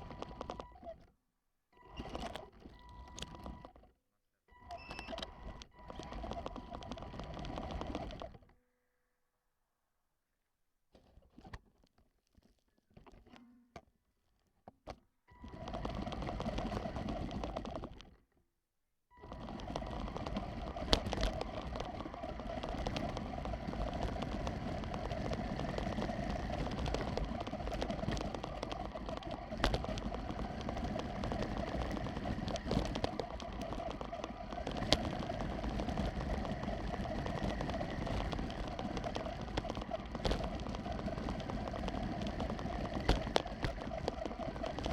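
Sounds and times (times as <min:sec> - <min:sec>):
sharp clicks: 0:19.2 - 0:44.9.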